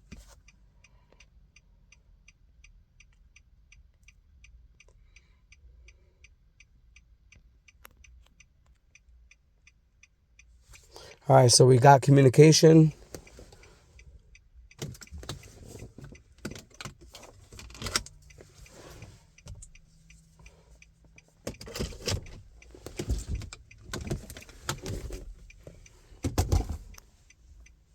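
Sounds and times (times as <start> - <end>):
handling clicks and rustles: 14.8 - 27.9.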